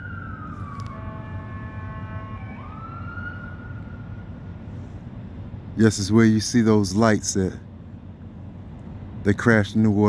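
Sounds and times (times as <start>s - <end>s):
second siren tone: 0.0s - 4.3s
emergency siren wailing: 0.0s - 4.6s.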